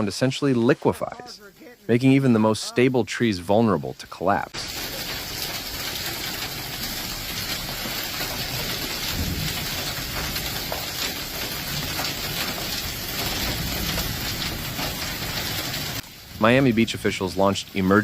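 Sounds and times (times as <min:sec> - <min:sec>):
heavy rain pouring: 0:03.6 - 0:18.0.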